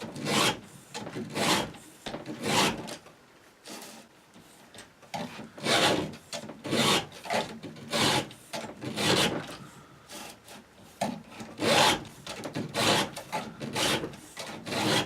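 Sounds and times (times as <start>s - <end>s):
file rasping on saw chain: 1.3s - 1.8s, 2.4s - 2.8s, 5.6s - 6.1s, 6.7s - 9.5s, 10.1s - 15.0s.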